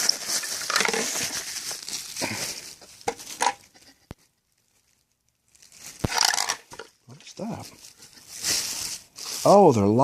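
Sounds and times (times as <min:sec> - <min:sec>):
packaging rustling and crinkling: 0:00.0 - 0:10.0.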